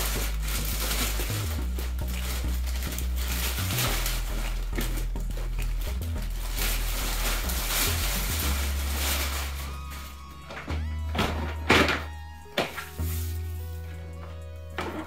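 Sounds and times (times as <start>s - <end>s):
background music with bass line: 0.0s - 15.0s
plastic packaging crackling: 0.0s - 15.0s.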